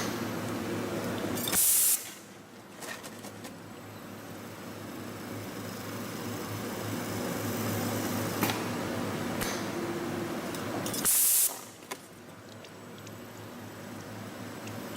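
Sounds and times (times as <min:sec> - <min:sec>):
loud burst of hiss: 0:01.5 - 0:02.2, 0:11.0 - 0:11.8.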